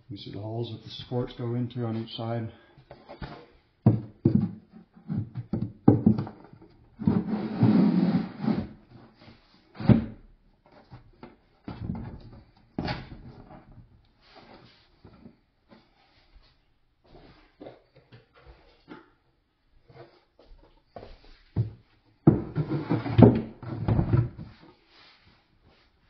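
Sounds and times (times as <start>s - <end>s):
knocks and clicks on wood: 5.3s - 6.6s.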